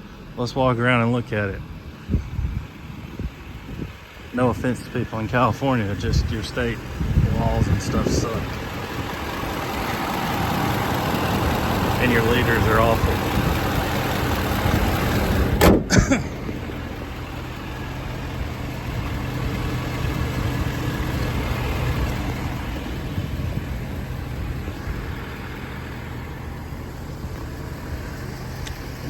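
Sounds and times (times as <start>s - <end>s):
diesel engine idling: 0.0s - 29.0s
loud sharp knocks: 15.6s - 16.0s.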